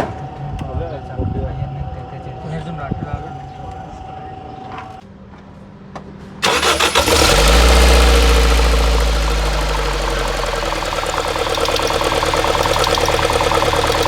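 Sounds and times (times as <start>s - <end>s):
car engine starting and idling: 6.4s - 14.0s
engine ticking: 6.4s - 14.0s.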